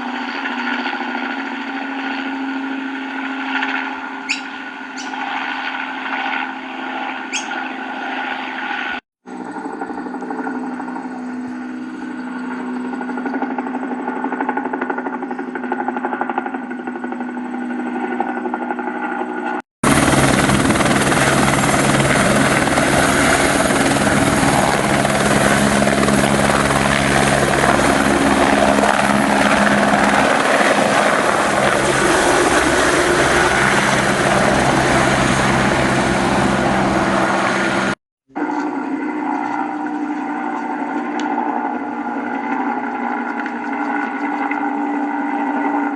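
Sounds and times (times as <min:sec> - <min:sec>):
helicopter engine and rotor: 0:00.0 - 0:45.9.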